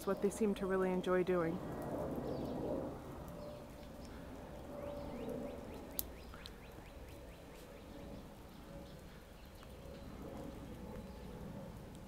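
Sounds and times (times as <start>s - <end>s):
small bird chirping: 3.4s - 10.2s.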